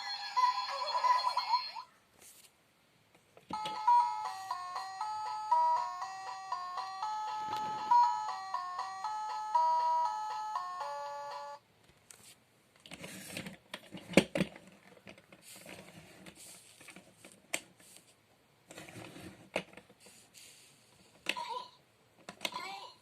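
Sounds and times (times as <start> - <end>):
toy clock beeping electronic tune: 0.0 - 1.8, 3.5 - 11.6
rustling noises: 2.1 - 2.6, 11.9 - 21.3.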